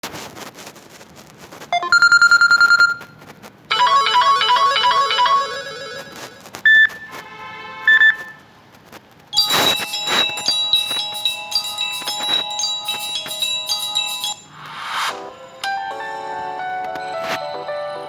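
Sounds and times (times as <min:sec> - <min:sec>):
electronic ringtone melodies: 0:01.8 - 0:03.0, 0:03.7 - 0:07.0, 0:09.4 - 0:18.0
short phone chimes: 0:03.7 - 0:06.0.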